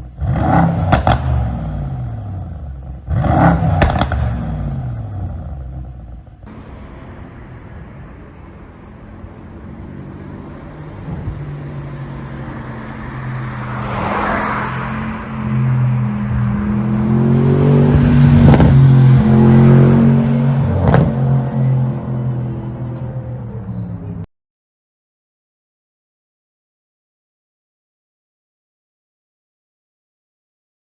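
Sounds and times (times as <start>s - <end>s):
sharp exhaust cracks: 0.0s - 6.7s
car exhaust rising in pitch: 0.0s - 10.1s.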